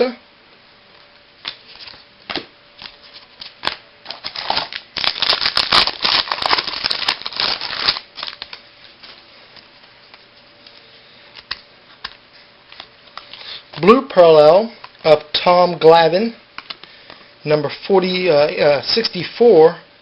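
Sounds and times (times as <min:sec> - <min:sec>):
card packs crinkling and rustling: 0:02.8 - 0:14.1.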